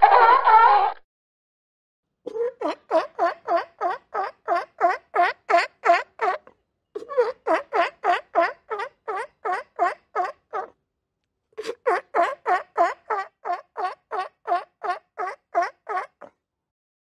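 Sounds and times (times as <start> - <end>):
sea lion barking: 2.3 - 10.7, 11.6 - 16.3.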